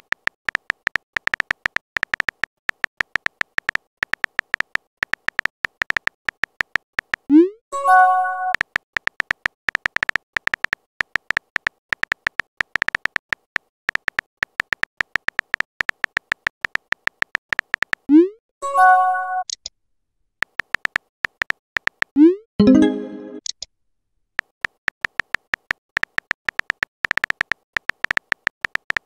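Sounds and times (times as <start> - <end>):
phone keyboard typing clicks: 0.0 - 7.3, 8.5 - 18.1, 20.4 - 22.2, 24.4 - 29.0
short message chime: 22.6 - 23.4.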